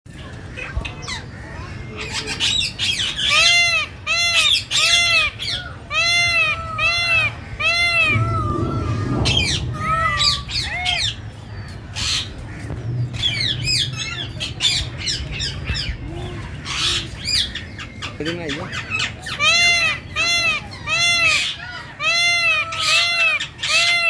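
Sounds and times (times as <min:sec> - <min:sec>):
peacock calling: 0:16.6 - 0:24.0.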